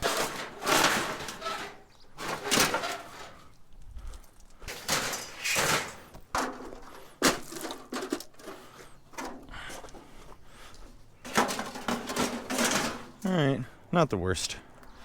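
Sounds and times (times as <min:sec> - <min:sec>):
scrap metal scraping and rattling: 0:00.0 - 0:03.6, 0:04.7 - 0:13.2.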